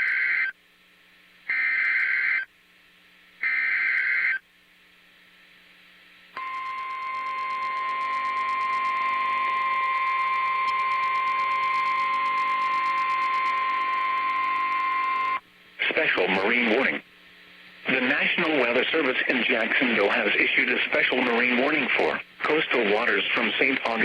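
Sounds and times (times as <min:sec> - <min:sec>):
steady alarm tone: 0:06.4 - 0:15.4.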